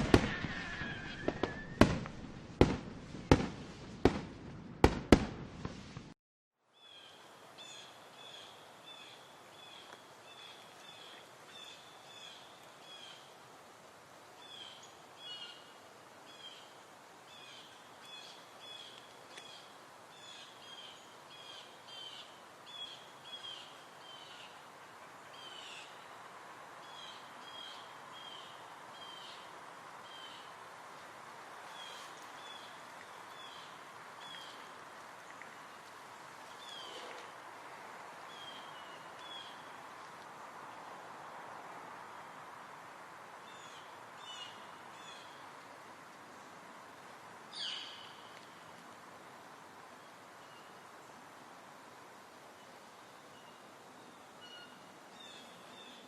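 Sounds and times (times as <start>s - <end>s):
firecracker bangs: 0.0s - 6.2s
steady outdoor hiss: 0.0s - 56.0s.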